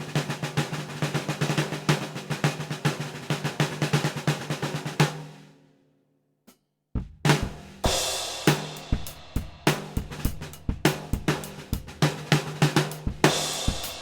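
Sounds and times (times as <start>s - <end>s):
drum kit groove: 0.0s - 5.3s, 7.0s - 14.0s
snare drum strokes: 7.3s - 14.0s.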